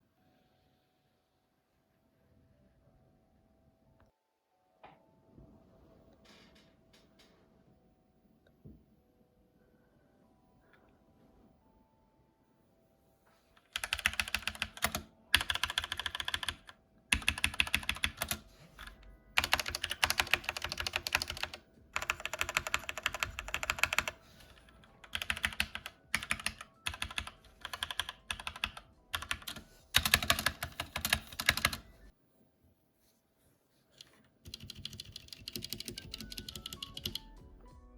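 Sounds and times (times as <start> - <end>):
mechanical keyboard typing: 13.6 - 31.9, 34.0 - 37.4.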